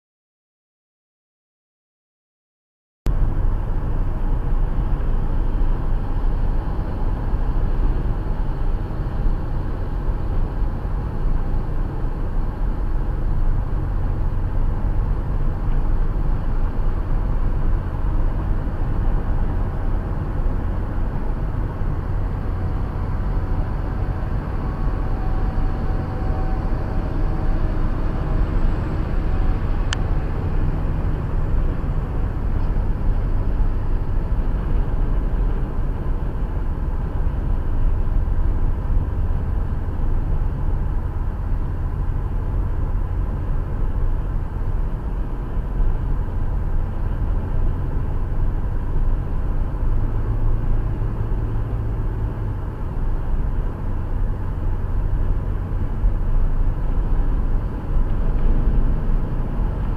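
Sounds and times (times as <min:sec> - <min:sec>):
car road and engine rumble: 0:03.1 - 0:59.9.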